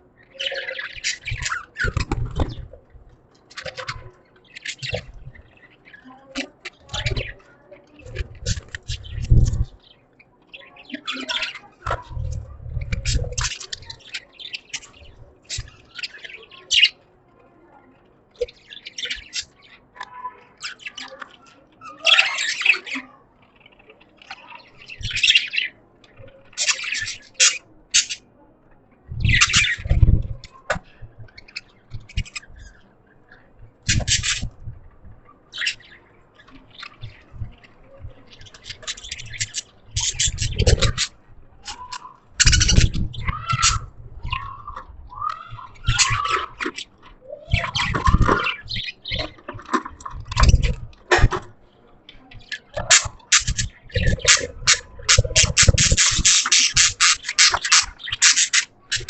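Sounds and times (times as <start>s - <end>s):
budgerigars chirping: 0.3s - 2.7s, 24.4s - 25.8s, 26.4s - 28.3s, 29.2s - 30.7s, 33.4s - 34.7s, 35.5s - 51.4s, 52.4s - 59.0s.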